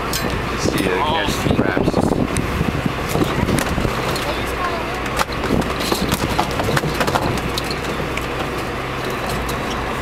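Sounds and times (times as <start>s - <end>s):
engine running steadily: 0.0s - 10.0s
scattered knocks and clicks: 5.0s - 9.8s.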